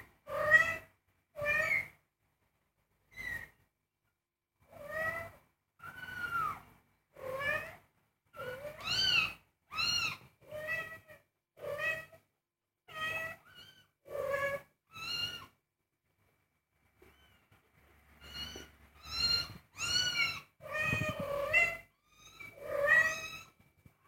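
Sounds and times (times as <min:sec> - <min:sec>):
kittens mewing: 0:18.2 - 0:23.6.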